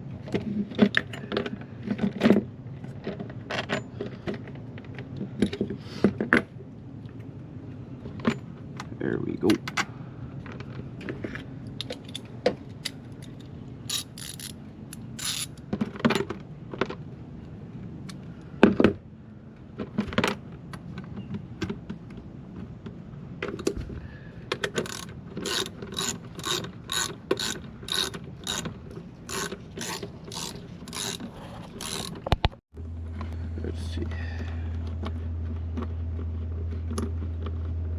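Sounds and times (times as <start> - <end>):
ratchet wrench clicking: 13.9 - 15.6, 24.8 - 28.7, 29.3 - 32.5.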